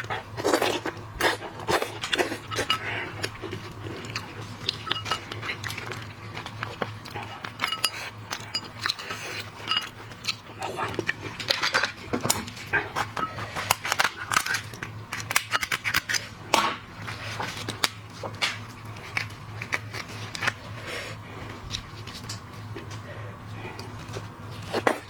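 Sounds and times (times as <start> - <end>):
steady low hum: 0.0 - 25.0
shellfish shells cracking: 13.6 - 16.6.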